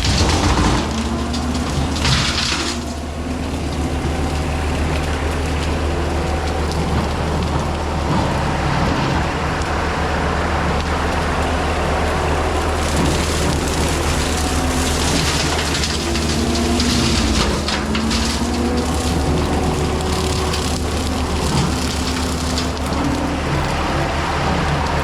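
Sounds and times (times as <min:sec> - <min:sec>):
diesel engine under load: 0:00.0 - 0:25.0
brush cutter shredding brush: 0:10.7 - 0:25.0.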